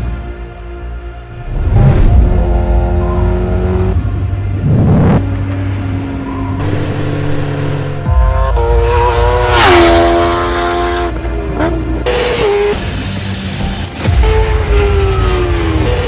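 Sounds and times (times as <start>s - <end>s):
motorcycle engine revving high: 4.6s - 5.3s.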